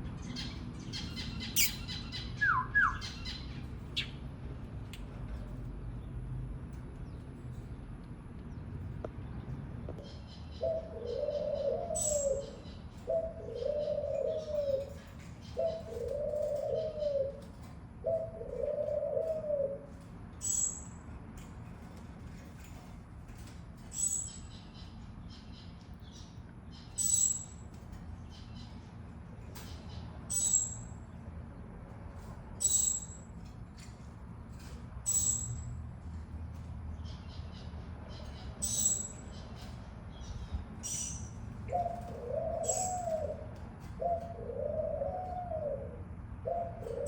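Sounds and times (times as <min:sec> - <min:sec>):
high bird chirps: 0:00.3 - 0:04.2, 0:26.8 - 0:27.6, 0:35.1 - 0:35.7, 0:38.2 - 0:39.7
dove cooing: 0:10.6 - 0:20.0, 0:41.7 - 0:47.0.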